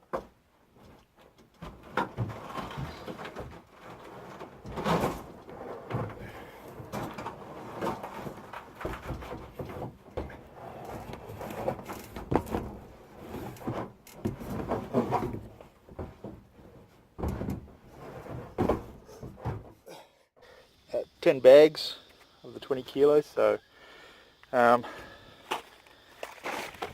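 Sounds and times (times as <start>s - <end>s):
stones rattling and scraping: 1.6s - 16.8s, 25.5s - 26.9s.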